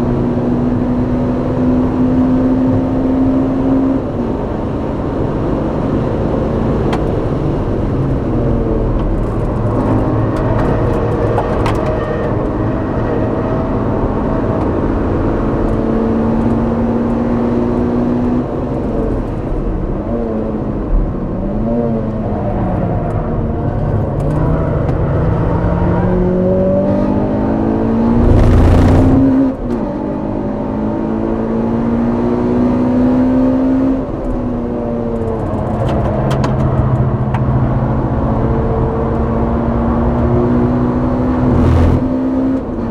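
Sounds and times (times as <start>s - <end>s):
car engine revving: 26.8s - 30.4s, 40.4s - 42.9s
loud rush of noise: 28.0s - 29.5s, 41.2s - 42.2s.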